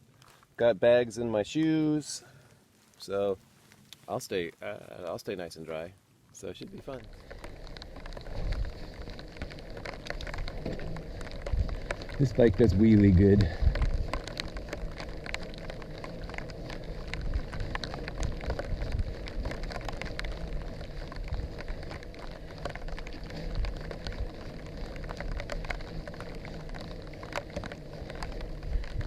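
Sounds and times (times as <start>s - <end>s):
raindrops ticking close by: 1.4s - 29.0s
rain falling: 2.8s - 29.0s
low steady rumble: 6.6s - 29.0s.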